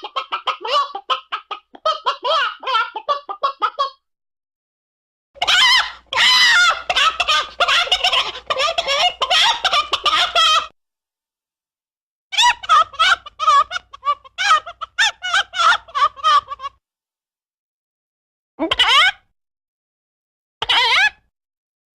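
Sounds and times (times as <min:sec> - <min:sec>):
chicken clucking and squawking: 0:00.0 - 0:04.0, 0:05.4 - 0:10.7, 0:12.4 - 0:16.8.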